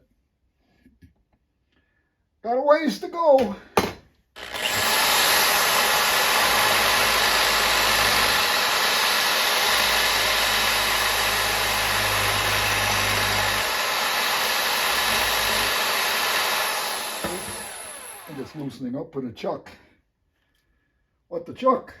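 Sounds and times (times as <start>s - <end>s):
electric drill grinding plastic: 4.4s - 18.7s.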